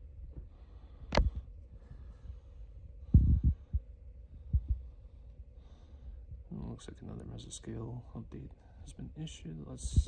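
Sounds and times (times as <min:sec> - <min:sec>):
steady low hum: 0:00.0 - 0:10.0
dull low thumps: 0:02.7 - 0:05.0.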